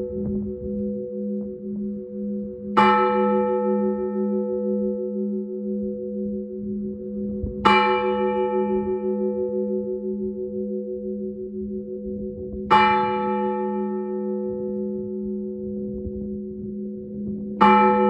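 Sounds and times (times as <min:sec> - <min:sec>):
church bell ringing: 0:00.0 - 0:18.0
low throbbing bell hum: 0:00.0 - 0:18.0.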